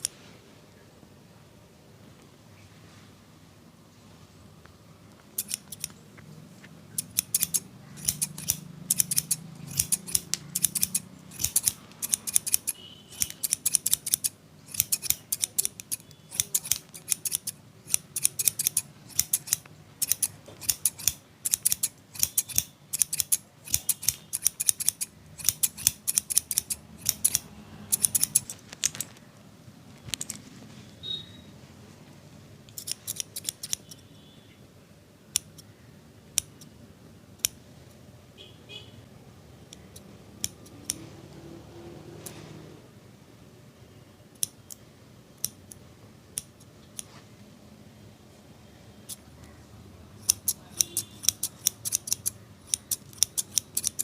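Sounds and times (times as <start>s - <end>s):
scissors snipping hair: 5.4s - 6.0s, 6.9s - 29.1s, 32.7s - 34.0s, 39.7s - 41.0s, 44.4s - 44.8s, 50.2s - 54.0s.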